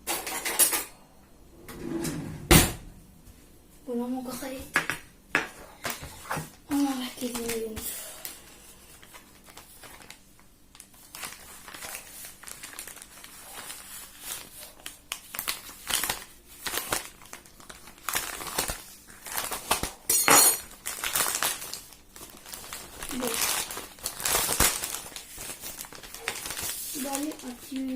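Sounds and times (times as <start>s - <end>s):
packaging crinkling and rustling: 5.8s - 27.9s.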